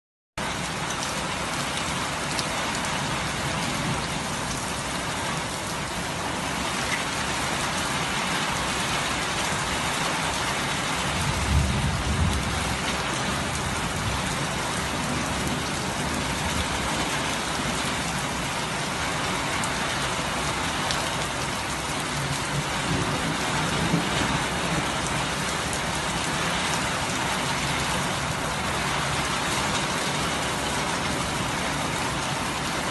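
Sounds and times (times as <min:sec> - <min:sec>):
heavy rain splashing: 0:00.4 - 0:32.9.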